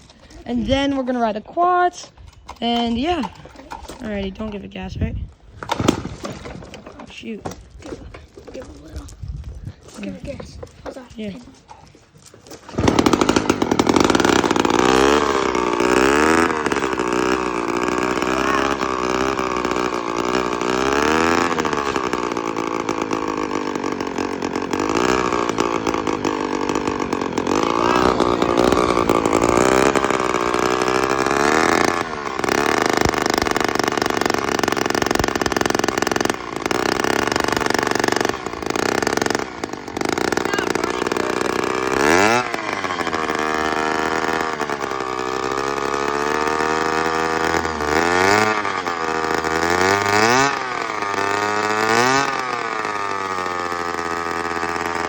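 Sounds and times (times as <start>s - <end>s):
loud scooter engine revving: 12.6s - 55.0s.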